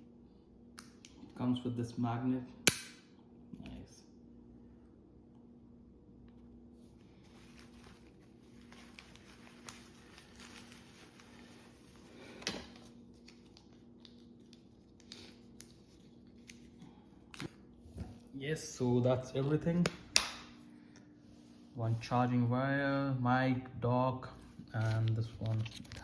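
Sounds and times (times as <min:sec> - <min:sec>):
low steady hum: 0:00.0 - 0:26.0
packaging rustling: 0:06.9 - 0:18.3, 0:24.6 - 0:26.0.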